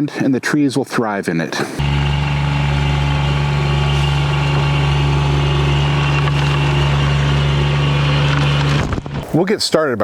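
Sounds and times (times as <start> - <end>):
motor humming: 1.8 - 9.2.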